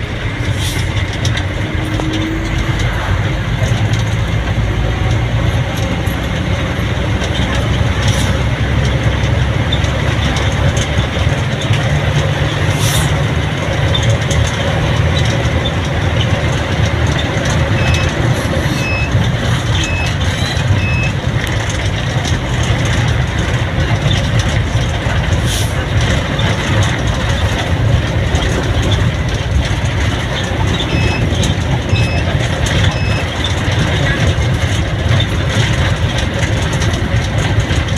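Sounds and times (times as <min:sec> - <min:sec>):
vehicle rumbling along road: 0:00.0 - 0:37.9
short high beeps: 0:17.7 - 0:19.2, 0:19.8 - 0:21.2, 0:30.9 - 0:33.3.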